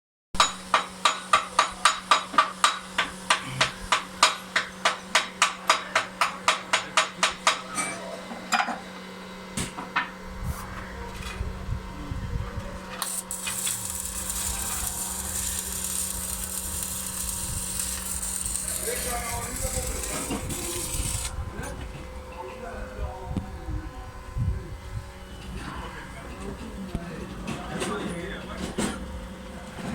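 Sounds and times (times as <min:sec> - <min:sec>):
steady hiss: 0:13.0 - 0:21.3.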